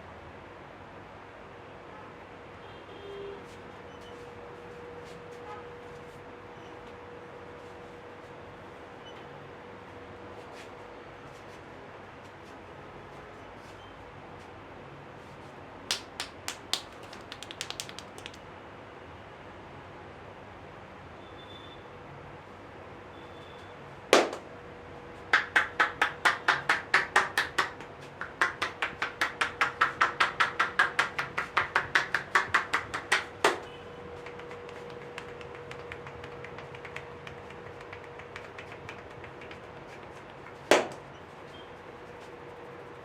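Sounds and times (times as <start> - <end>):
hands slapping in massage: 15.9 - 18.4, 24.2 - 24.5, 25.3 - 41.2.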